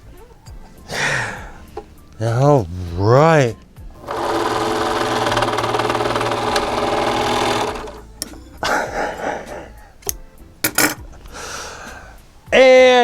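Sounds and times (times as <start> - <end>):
overlock sewing machine stitching: 4.0 - 8.3.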